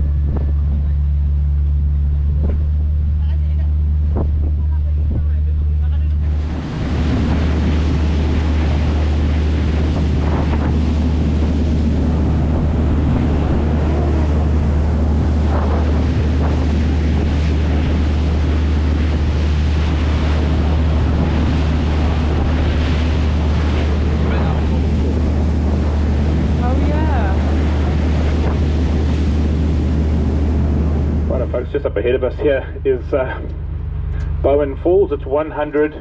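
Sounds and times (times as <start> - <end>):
wind rushing over microphone: 0.0 - 35.1
boat engine droning: 0.0 - 36.0
water along hull: 0.0 - 36.0.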